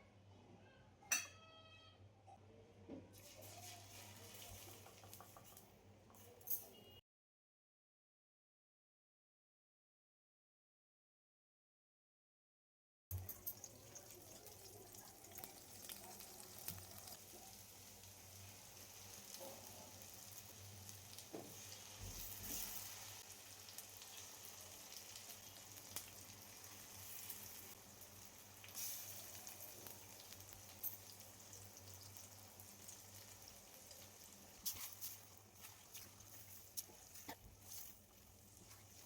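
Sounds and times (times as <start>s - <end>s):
food sizzling in a pan: 3.2s - 5.6s, 13.1s - 39.0s.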